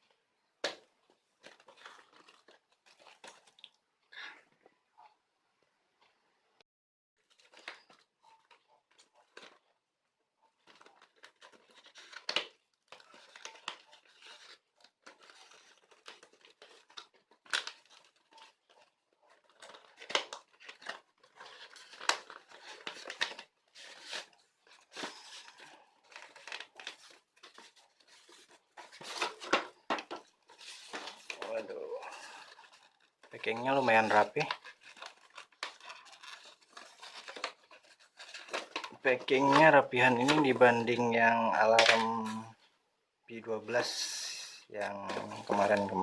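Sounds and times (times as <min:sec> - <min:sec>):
packaging crinkling: 0:00.0 - 0:03.8, 0:07.2 - 0:09.8, 0:10.4 - 0:42.7, 0:43.7 - 0:46.0
packaging tearing: 0:01.4 - 0:03.7, 0:10.5 - 0:42.4, 0:44.8 - 0:46.0.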